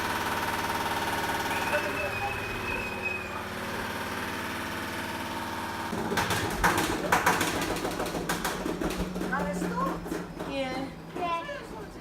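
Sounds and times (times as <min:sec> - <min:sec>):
washing machine motor hum: 0:00.0 - 0:12.0
washing machine knocking and rattling: 0:05.9 - 0:12.0.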